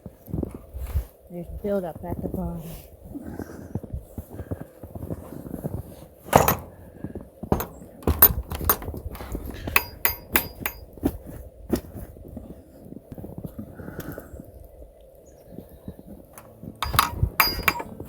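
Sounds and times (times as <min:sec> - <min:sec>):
metallic knocks and clinks: 0:06.3 - 0:06.9, 0:07.5 - 0:10.8, 0:16.4 - 0:18.0.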